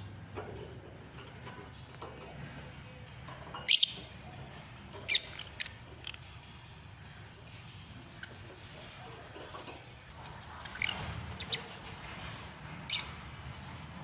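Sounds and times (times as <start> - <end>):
lovebirds shrill calls: 3.7 - 4.2, 5.0 - 6.2, 12.9 - 13.3.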